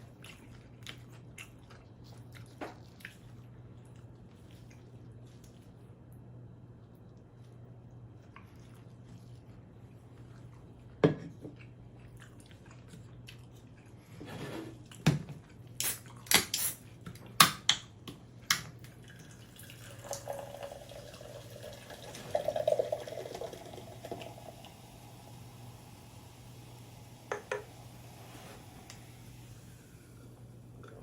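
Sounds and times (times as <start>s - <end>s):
person chewing food: 0.0s - 6.0s, 6.6s - 14.1s.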